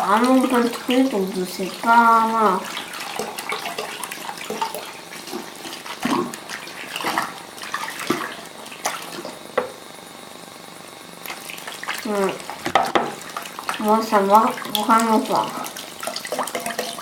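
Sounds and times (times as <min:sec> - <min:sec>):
slime squelching: 0:11.2 - 0:17.0.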